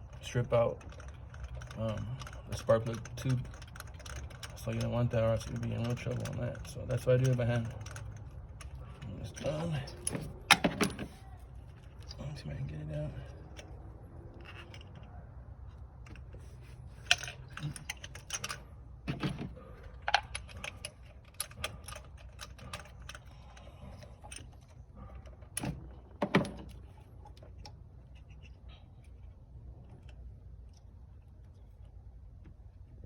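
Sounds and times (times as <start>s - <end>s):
metal socket clicking and knocking: 17.1s - 23.3s.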